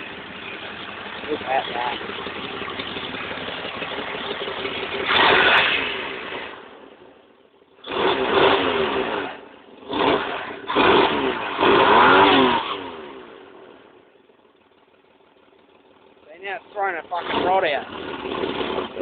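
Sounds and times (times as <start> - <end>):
car engine revving: 0.0 - 14.1, 16.2 - 19.0.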